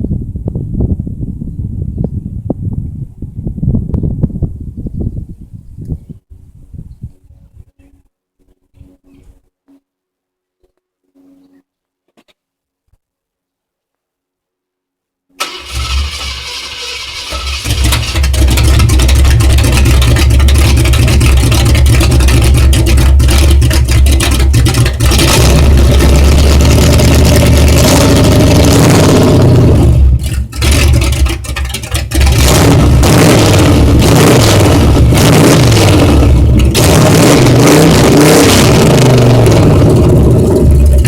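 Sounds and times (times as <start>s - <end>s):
car engine starting and running: 15.4s - 41.0s.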